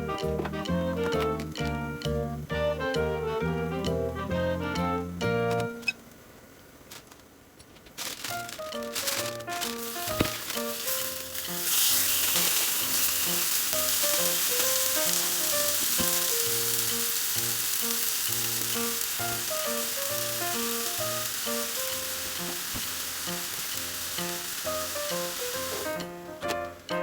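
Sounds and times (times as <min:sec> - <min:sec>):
light background music: 0:00.0 - 0:06.0, 0:08.0 - 0:27.0
food sizzling in a pan: 0:08.7 - 0:26.1.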